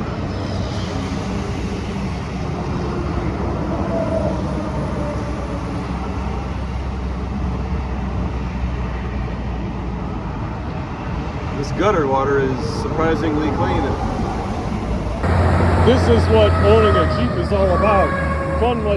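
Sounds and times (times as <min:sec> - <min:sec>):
vehicle rumble and road noise: 0:13.3 - 0:18.9.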